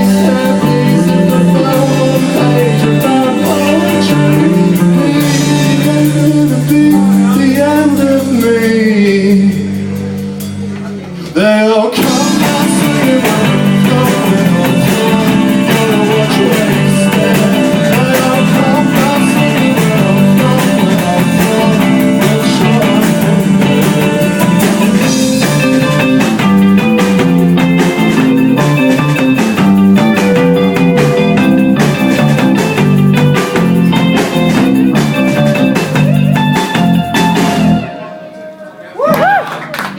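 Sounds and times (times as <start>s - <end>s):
person singing: 0.0s - 29.4s
live rock band playing: 0.0s - 39.9s.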